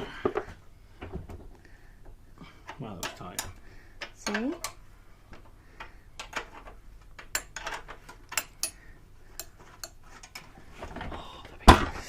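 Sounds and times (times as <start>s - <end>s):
metallic clicks of tools: 5.8s - 10.5s.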